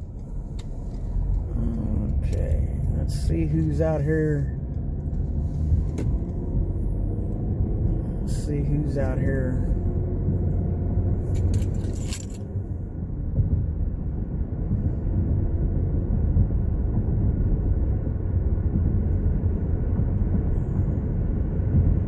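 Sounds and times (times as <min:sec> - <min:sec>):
car interior rumble: 0:00.0 - 0:22.0
keys jangling: 0:11.3 - 0:12.5.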